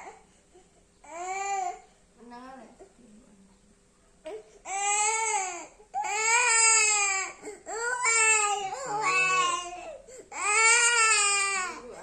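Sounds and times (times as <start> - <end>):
little boy crying: 7.8 - 11.8.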